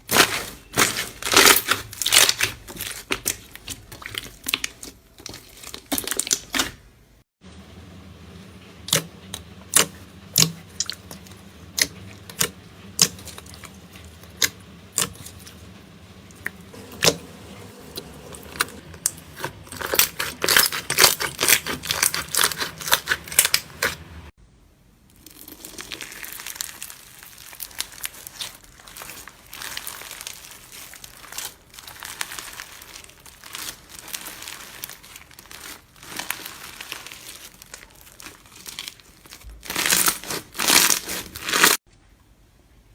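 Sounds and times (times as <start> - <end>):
slime squeezed popping and crackling: 0.7 - 6.7, 19.7 - 23.9, 25.2 - 41.8.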